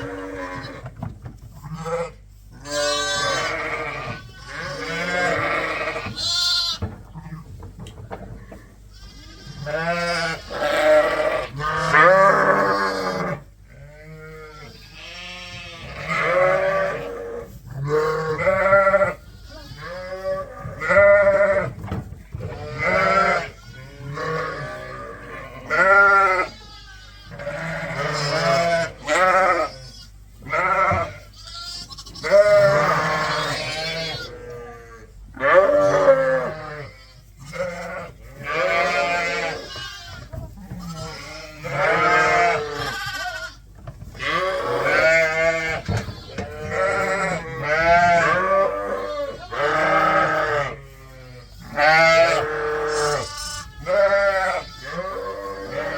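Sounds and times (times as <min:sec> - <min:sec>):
sheep bleating: 0:00.0 - 0:01.0, 0:01.6 - 0:07.5, 0:08.5 - 0:21.8, 0:22.4 - 0:55.9.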